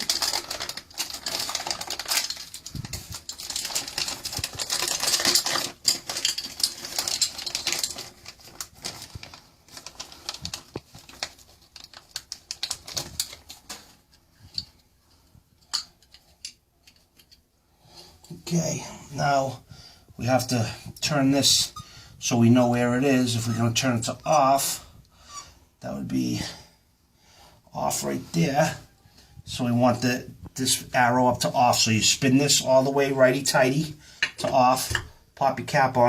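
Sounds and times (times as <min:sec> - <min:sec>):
plastic parts clicking and rattling: 0:00.0 - 0:14.8, 0:15.6 - 0:17.5.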